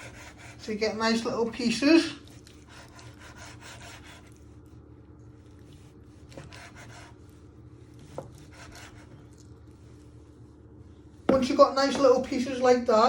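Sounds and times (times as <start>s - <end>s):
knife cutting raw meat: 0.0s - 0.6s, 2.3s - 4.6s, 5.7s - 7.4s, 8.0s - 9.5s.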